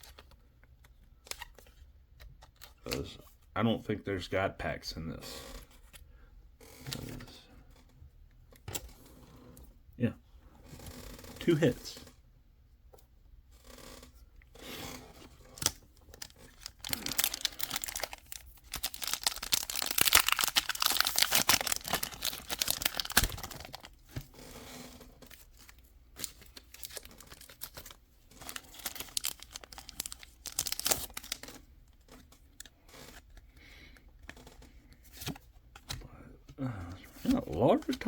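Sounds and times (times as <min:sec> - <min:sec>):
foil wrapper tearing: 0:15.6 - 0:24.0, 0:26.2 - 0:31.5.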